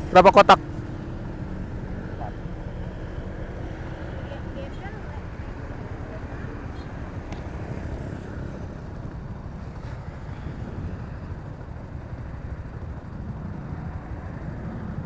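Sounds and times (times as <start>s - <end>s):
motorcycle engine rumble: 0.0s - 15.0s
road noise: 0.0s - 15.0s
wind on microphone: 0.7s - 15.0s.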